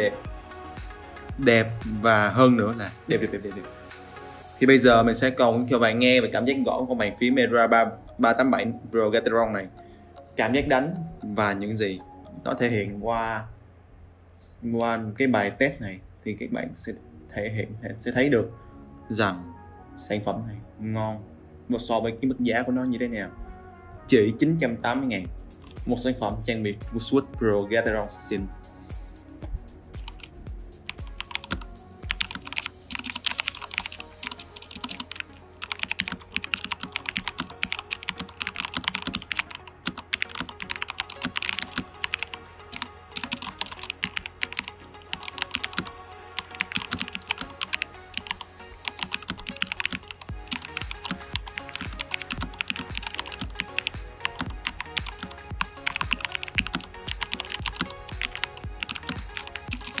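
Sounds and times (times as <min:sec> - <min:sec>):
mechanical keyboard typing: 0:30.9 - 1:00.0.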